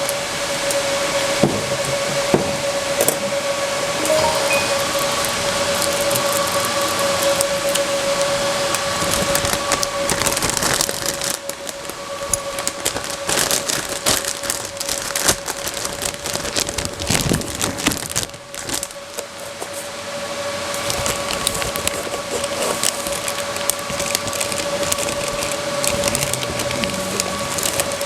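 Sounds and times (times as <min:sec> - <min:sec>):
high-pitched hum: 0:03.2 - 0:06.6.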